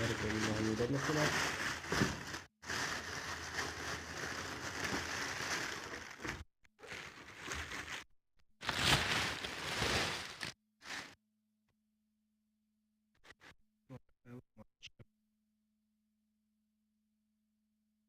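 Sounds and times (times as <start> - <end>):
packaging rustling and crinkling: 0.0 - 11.2.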